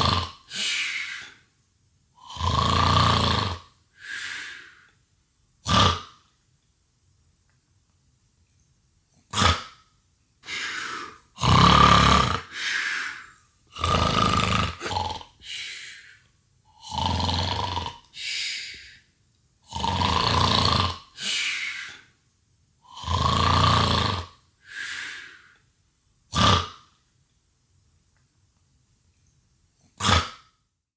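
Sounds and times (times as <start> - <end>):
person fake snoring: 0.0 - 1.4, 2.2 - 4.9, 5.6 - 6.2, 9.3 - 9.8, 10.4 - 19.0, 19.6 - 22.1, 22.8 - 25.5, 26.3 - 26.9, 30.0 - 30.6.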